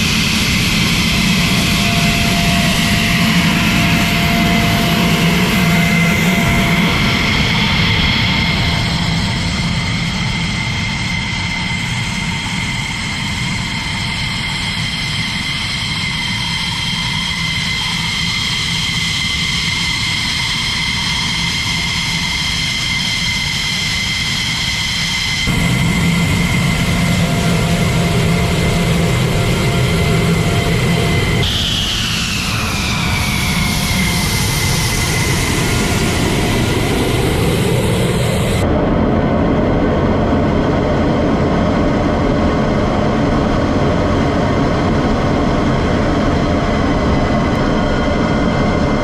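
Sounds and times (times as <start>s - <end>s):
jet engine whine and rumble: 0.0s - 49.0s.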